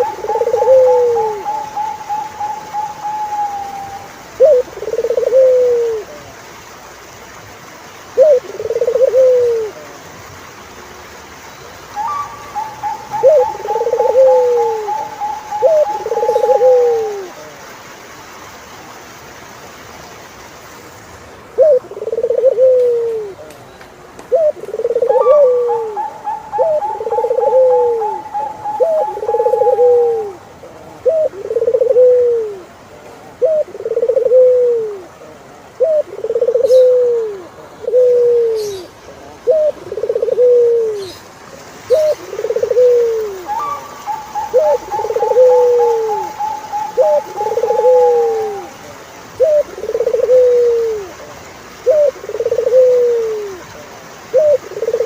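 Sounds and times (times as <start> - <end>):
higher trilling bird call: 0.0 - 6.0, 12.0 - 17.3, 24.4 - 30.4, 41.9 - 48.7
doves cooing: 0.0 - 6.3, 8.2 - 10.0, 11.9 - 17.6, 21.5 - 23.5, 24.3 - 55.0.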